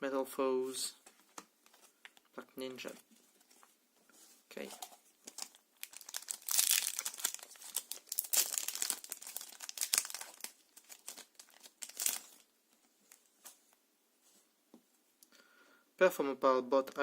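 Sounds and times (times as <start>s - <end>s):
foil wrapper crinkling: 4.7s - 12.5s.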